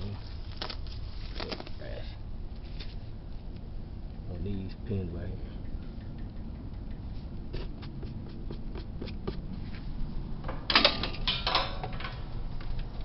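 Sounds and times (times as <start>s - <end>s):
panel parts clattering: 10.4s - 12.3s.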